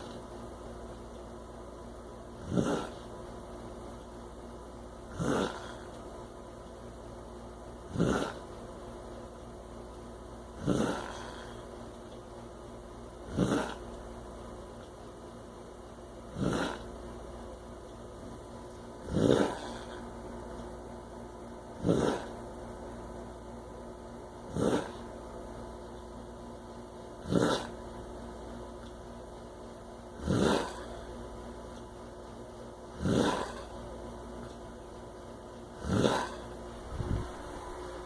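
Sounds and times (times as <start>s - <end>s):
faint background hum: 0.0s - 38.0s
heavy harsh snoring: 2.4s - 3.0s, 5.1s - 6.0s, 7.9s - 8.5s, 10.6s - 11.7s, 13.3s - 13.8s, 16.3s - 16.9s, 19.0s - 20.0s, 21.8s - 22.4s, 24.5s - 25.0s, 27.2s - 27.8s, 30.2s - 31.1s, 33.0s - 33.7s, 35.8s - 38.0s.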